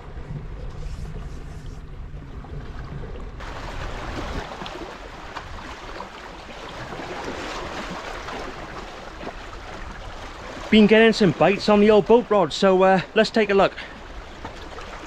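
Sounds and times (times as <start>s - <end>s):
wind rumbling on microphone: 0.0s - 6.1s.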